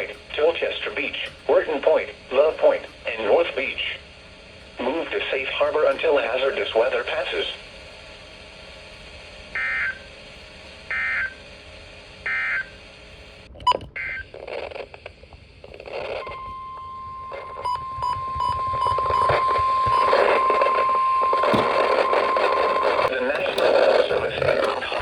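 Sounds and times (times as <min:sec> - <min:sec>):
steady warning alarm tone: 0:00.0 - 0:08.2, 0:09.4 - 0:10.2, 0:10.8 - 0:11.6, 0:12.2 - 0:13.0, 0:15.9 - 0:25.0
radio static: 0:00.0 - 0:25.0
warbling data tones: 0:15.7 - 0:25.0.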